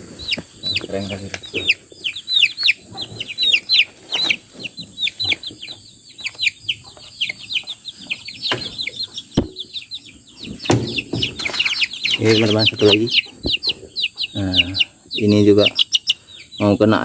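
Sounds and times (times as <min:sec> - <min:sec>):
baby chicks peeping: 0:00.0 - 0:17.0
sharp knocks: 0:09.4 - 0:09.8, 0:10.6 - 0:11.6.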